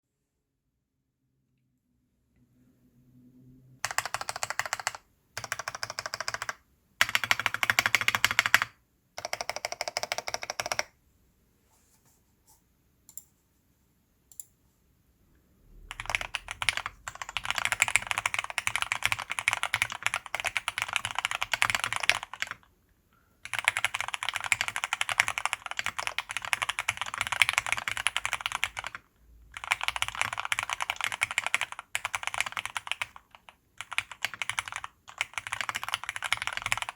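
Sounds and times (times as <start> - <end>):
mechanical keyboard typing: 3.8 - 11.0, 15.9 - 22.7, 23.4 - 36.9.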